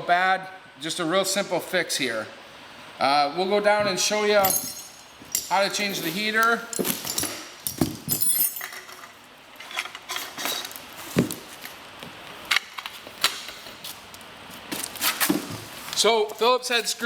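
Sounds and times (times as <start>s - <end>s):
light clinks and knocks: 4.4s - 5.8s, 6.4s - 10.8s.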